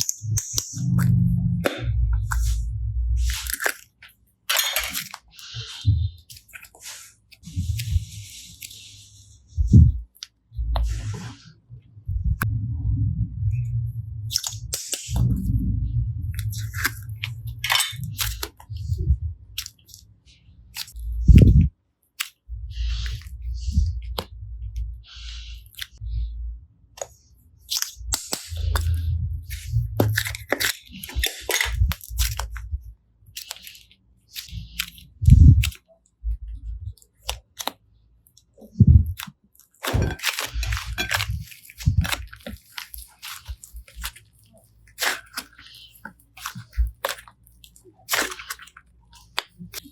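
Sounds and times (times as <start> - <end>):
slime crackling and popping: 3.2 - 8.0, 16.3 - 20.1, 20.7 - 22.4, 27.0 - 32.6, 33.3 - 35.9, 36.9 - 49.9.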